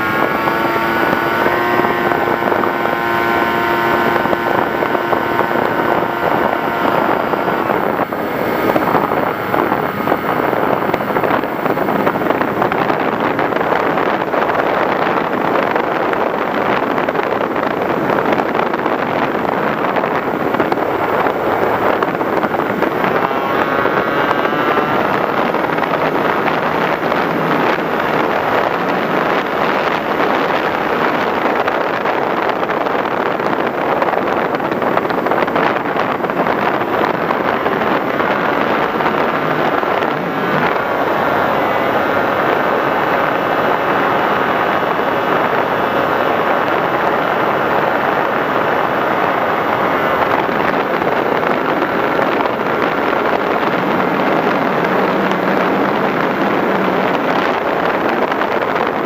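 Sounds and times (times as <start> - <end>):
model plane motor whine: 0.0 - 15.1
wind noise: 0.0 - 59.0.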